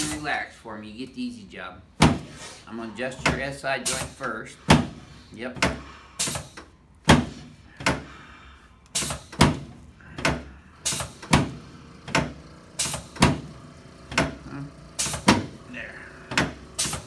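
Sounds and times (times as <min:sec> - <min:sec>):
adjusting table clunks: 0:09.0 - 0:13.5, 0:14.1 - 0:15.6, 0:16.3 - 0:17.0.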